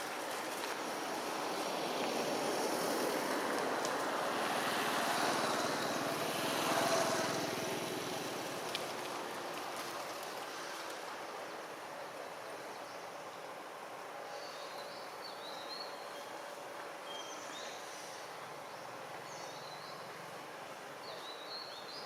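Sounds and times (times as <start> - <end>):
vehicle passing by: 0.9 - 9.1.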